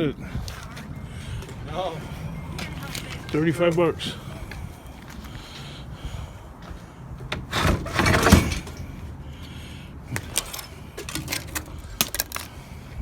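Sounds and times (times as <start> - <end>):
loud rattling clatter: 7.4 - 8.8.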